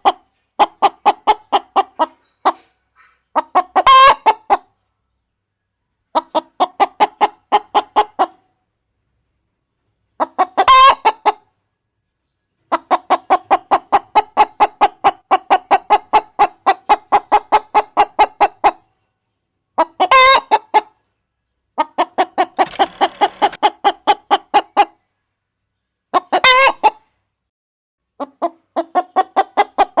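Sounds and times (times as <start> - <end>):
hen clucking: 0.0 - 4.8, 6.1 - 8.5, 10.2 - 11.5, 12.7 - 18.9, 19.8 - 21.0, 28.2 - 30.0.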